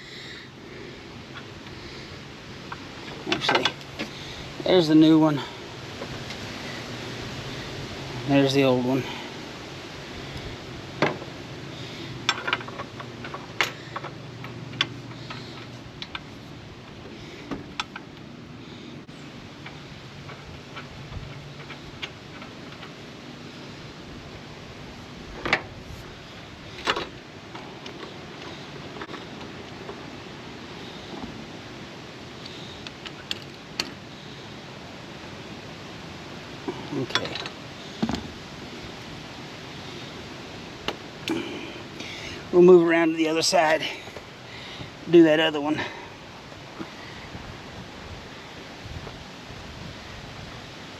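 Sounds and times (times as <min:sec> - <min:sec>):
faint steady hum: 0:00.0 - 0:50.9
steady background hiss: 0:00.0 - 0:50.9
metallic clicks and taps of tools: 0:12.2 - 0:16.3.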